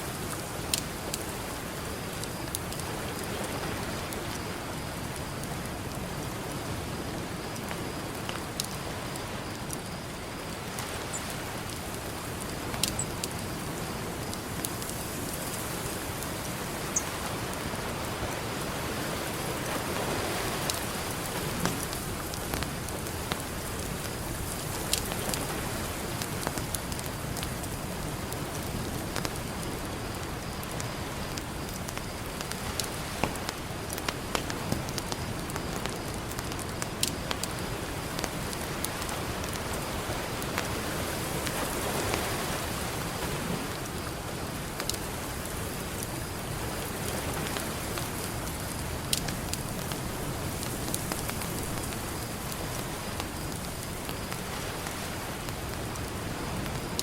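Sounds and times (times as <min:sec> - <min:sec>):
campfire crackling and popping: 0:00.1 - 0:57.0
ocean surf: 0:10.3 - 0:28.2, 0:37.6 - 0:57.0.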